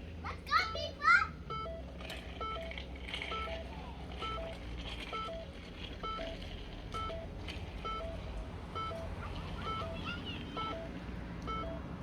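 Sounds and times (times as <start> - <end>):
car warning chime: 3.3 - 6.4, 7.0 - 11.9.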